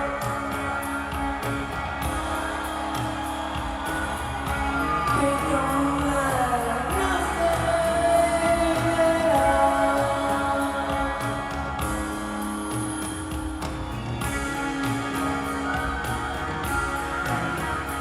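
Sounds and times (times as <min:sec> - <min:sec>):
person singing: 0:00.0 - 0:13.6
live rock band: 0:00.0 - 0:18.0.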